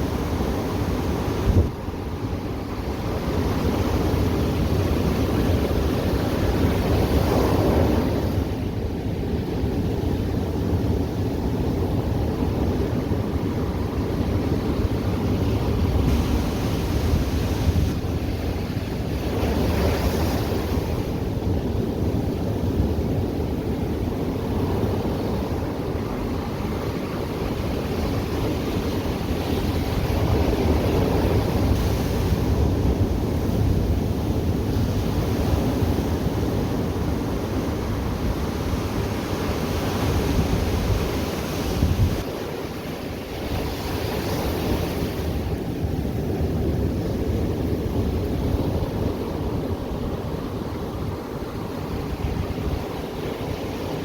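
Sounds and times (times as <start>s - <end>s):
ocean surf washing onto beach: 0.0s - 54.0s
wind rumbling on microphone: 0.0s - 54.0s
waves breaking: 14.8s - 21.3s.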